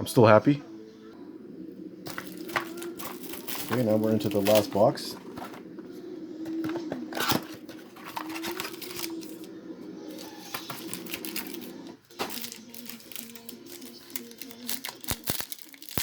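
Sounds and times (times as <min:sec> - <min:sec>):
foil packaging crinkling and tearing: 0:02.0 - 0:05.8, 0:06.4 - 0:09.5, 0:10.1 - 0:16.0.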